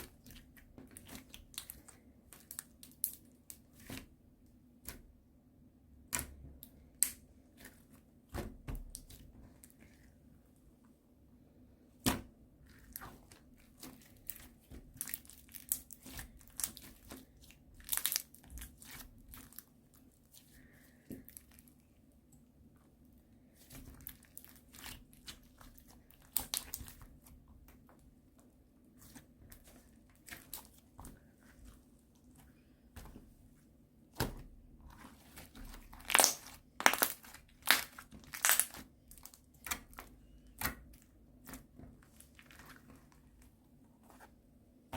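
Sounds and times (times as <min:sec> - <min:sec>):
slime crust cracking: 0:35.4 - 0:41.6.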